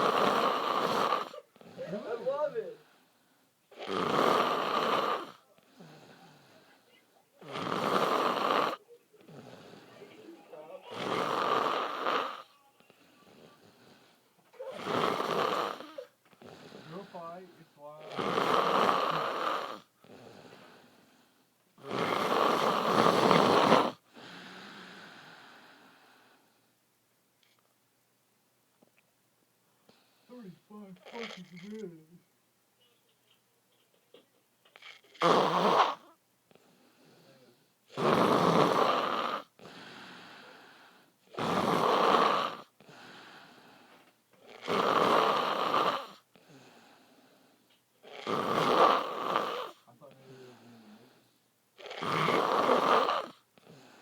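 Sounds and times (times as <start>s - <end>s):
man snoring loudly: 0.0s - 1.4s, 3.8s - 6.1s, 7.4s - 9.8s, 10.9s - 12.4s, 14.8s - 16.0s, 18.0s - 20.4s, 21.8s - 24.0s, 35.2s - 36.0s, 38.0s - 39.6s, 41.4s - 42.7s, 44.5s - 46.2s, 48.1s - 51.1s, 51.8s - 53.8s
quiet breaths: 0.0s - 27.8s, 28.8s - 54.0s.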